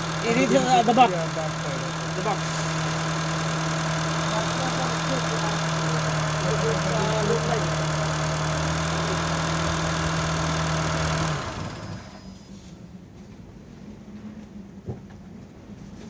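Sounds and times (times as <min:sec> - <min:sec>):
car engine idling: 0:00.0 - 0:12.6.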